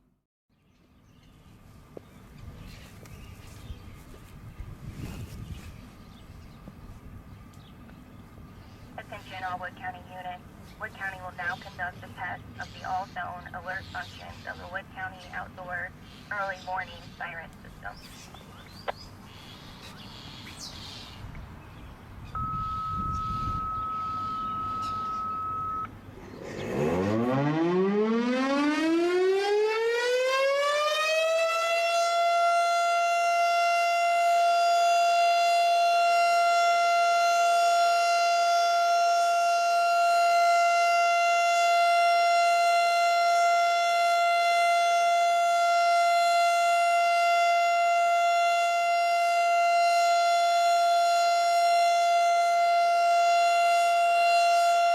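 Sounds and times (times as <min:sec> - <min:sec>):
steady high tone: 0:22.4 - 0:25.9
warning siren winding up: 0:22.4 - 0:54.9.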